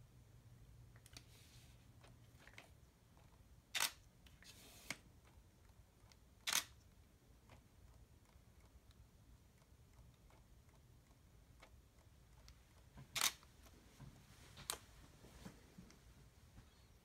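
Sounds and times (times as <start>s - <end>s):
soft hiss: 0.8s - 2.8s
camera shutter clicks: 3.7s - 4.0s, 6.4s - 6.8s, 13.1s - 13.4s.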